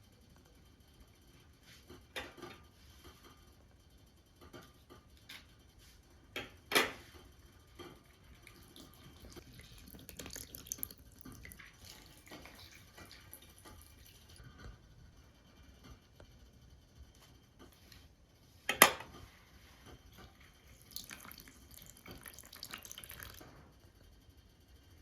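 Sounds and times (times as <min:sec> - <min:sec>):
water pouring and splashing: 0:08.4 - 0:14.4, 0:20.2 - 0:23.6.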